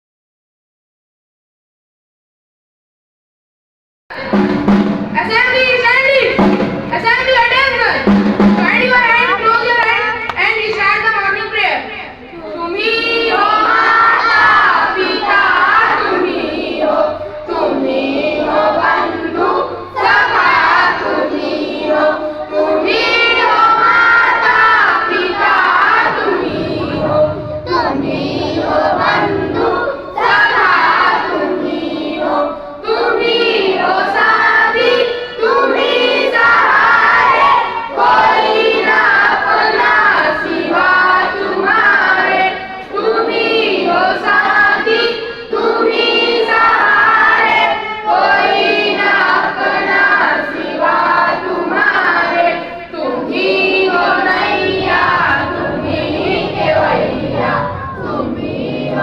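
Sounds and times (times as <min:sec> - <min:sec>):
children singing in unison: 0:12.3 - 0:59.0.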